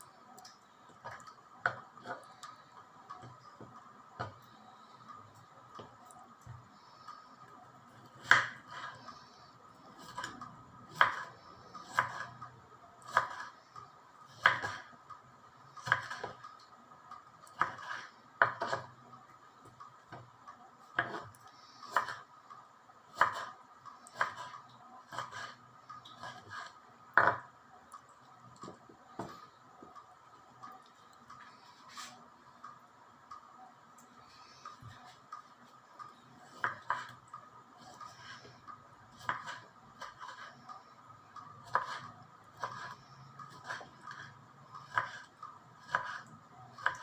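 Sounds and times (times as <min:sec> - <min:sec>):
knife chopping on cutting board: 0:08.2 - 0:08.9, 0:10.9 - 0:12.3, 0:13.1 - 0:13.5, 0:14.4 - 0:14.8, 0:15.8 - 0:16.4, 0:17.6 - 0:18.9, 0:21.0 - 0:21.3, 0:21.9 - 0:22.2, 0:23.2 - 0:23.5, 0:24.2 - 0:24.5, 0:26.2 - 0:27.5, 0:36.5 - 0:37.1, 0:39.2 - 0:40.5, 0:41.6 - 0:43.0, 0:44.9 - 0:46.2.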